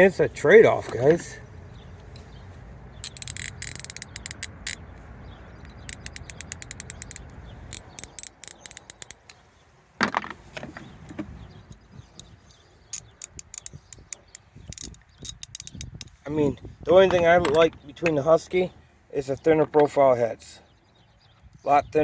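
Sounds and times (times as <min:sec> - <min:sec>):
socket ratchet clicking: 0:03.0 - 0:04.8, 0:05.6 - 0:09.4, 0:11.7 - 0:16.2.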